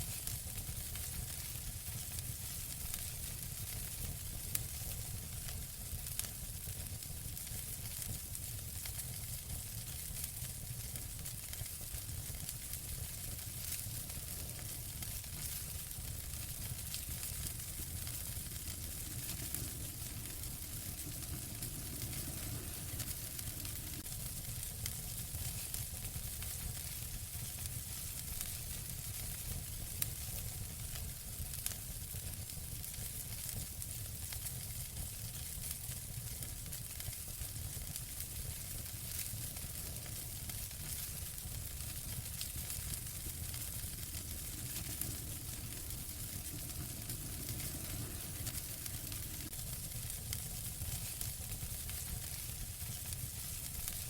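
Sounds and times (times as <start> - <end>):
wood fire crackling: 0.0 - 54.0
fire pops: 12.3 - 29.0, 37.8 - 54.0.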